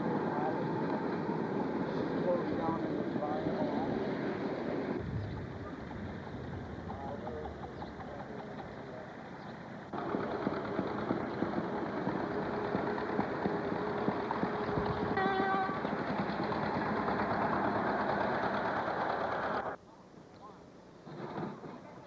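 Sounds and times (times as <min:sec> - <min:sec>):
two-cycle engine running: 0:05.8 - 0:09.1, 0:09.9 - 0:19.8.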